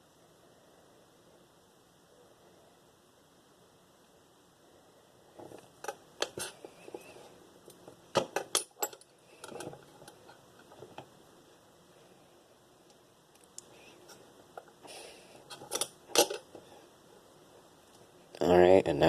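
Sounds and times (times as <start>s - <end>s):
small metal lock parts clicking: 8.2s - 10.2s, 15.5s - 16.5s.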